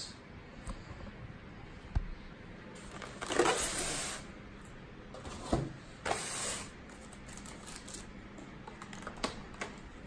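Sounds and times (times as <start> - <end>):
plastic packaging handled: 2.8 - 4.2, 5.4 - 9.8.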